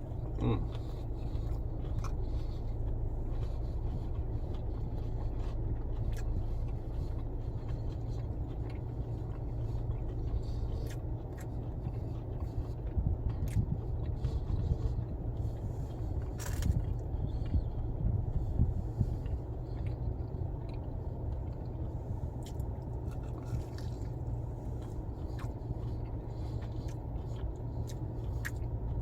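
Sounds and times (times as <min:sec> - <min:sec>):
person chewing crunchy food: 0:00.0 - 0:29.0
steady low rumble: 0:00.0 - 0:29.0.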